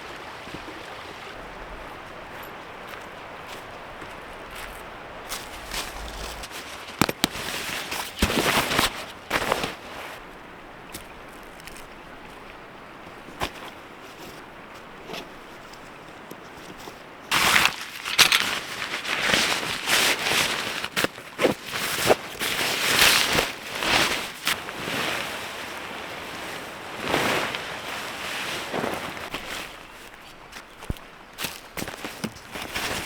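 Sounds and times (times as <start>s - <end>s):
tent fabric rustling: 5.2s - 10.0s, 17.3s - 30.8s, 31.4s - 33.0s.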